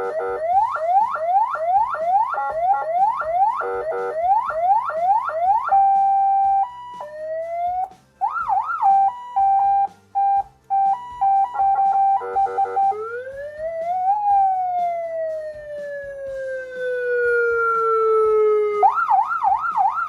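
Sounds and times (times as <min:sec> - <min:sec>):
electronic siren: 0:00.0 - 0:20.0
short beeps: 0:05.7 - 0:07.3, 0:08.8 - 0:13.0.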